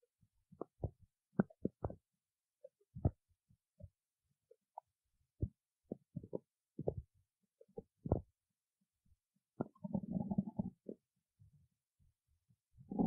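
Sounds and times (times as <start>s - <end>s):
stomach growling: 0.6s - 2.0s, 7.7s - 8.3s, 9.6s - 11.0s.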